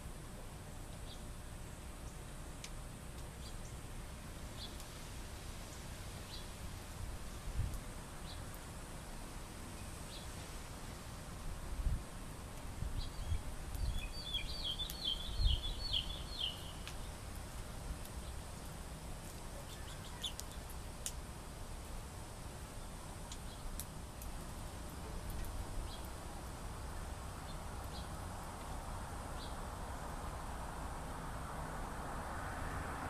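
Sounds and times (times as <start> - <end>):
songbird chirping: 0.4 - 3.9, 4.5 - 11.0, 12.7 - 20.8, 22.6 - 30.9.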